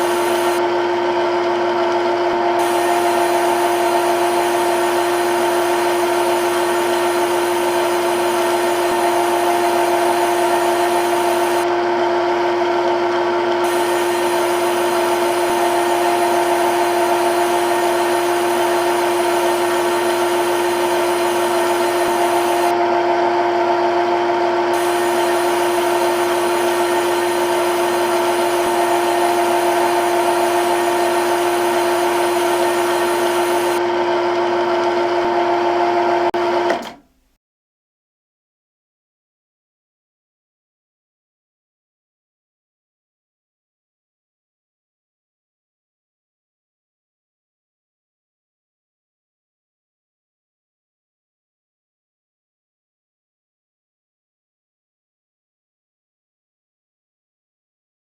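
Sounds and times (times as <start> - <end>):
lathe machining hum: 0.0 - 37.0.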